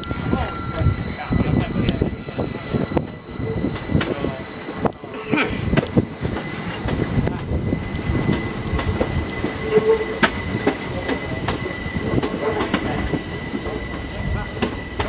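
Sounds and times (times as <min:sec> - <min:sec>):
train wheel squeal: 0:00.0 - 0:15.0
train wheels knocking over rail joints: 0:08.2 - 0:15.0.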